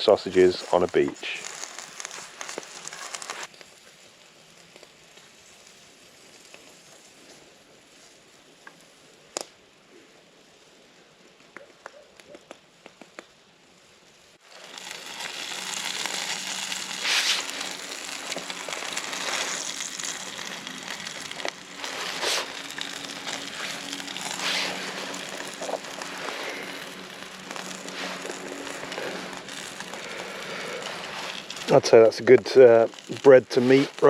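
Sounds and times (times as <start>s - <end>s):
fat spitting and crackling: 0.0s - 3.5s, 14.5s - 34.0s
sausages sizzling: 0.0s - 11.5s, 12.3s - 34.0s.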